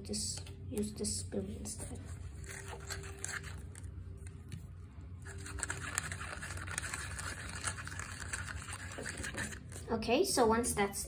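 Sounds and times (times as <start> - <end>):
spoon stirring and scraping container: 1.8 - 3.9, 5.2 - 9.9.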